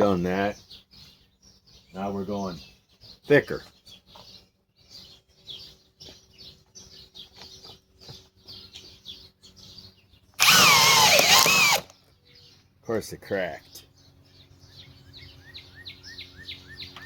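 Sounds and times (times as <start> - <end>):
hammer drill driving into wood: 10.4 - 11.9.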